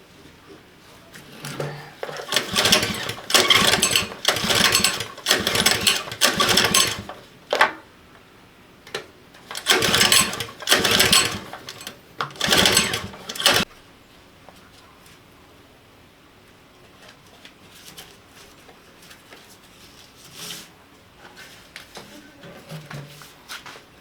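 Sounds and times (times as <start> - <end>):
power tool running in bursts: 2.0 - 7.2, 9.5 - 13.6.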